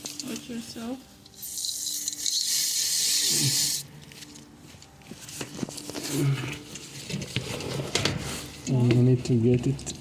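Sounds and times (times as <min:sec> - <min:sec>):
aerosol can spraying hiss: 0:02.3 - 0:03.8.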